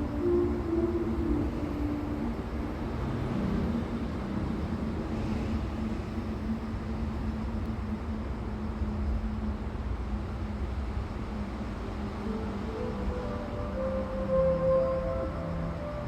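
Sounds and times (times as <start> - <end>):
music held notes: 0.0 - 6.6, 11.6 - 16.0
faint steady hum: 0.0 - 16.0
outdoor rumble and hiss: 0.0 - 16.0.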